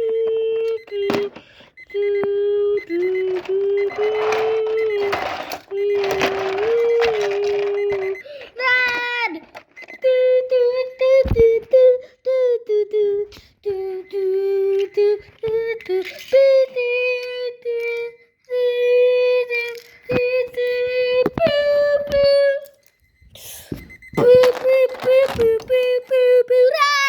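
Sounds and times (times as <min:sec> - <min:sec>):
child singing wordless tune: 0:10.0 - 0:22.7, 0:24.2 - 0:27.0.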